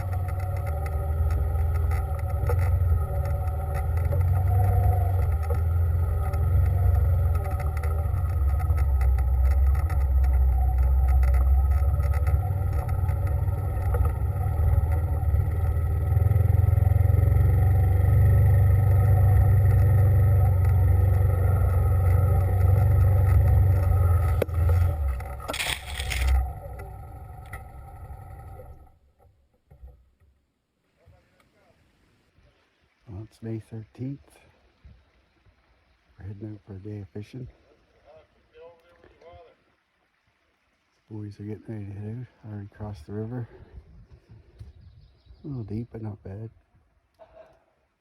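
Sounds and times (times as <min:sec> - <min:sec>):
vehicle engine rumbling: 0:00.0 - 0:48.0
rushing scrape: 0:24.0 - 0:26.5.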